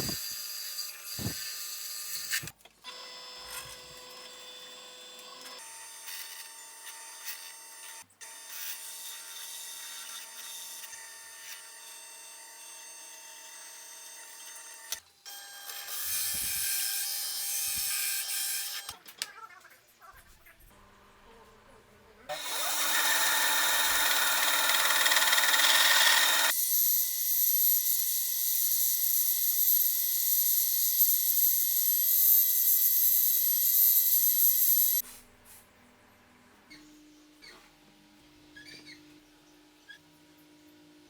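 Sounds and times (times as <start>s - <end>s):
harsh cutting noise: 22.3s - 32.1s
power tool machine whine: 22.3s - 35.0s.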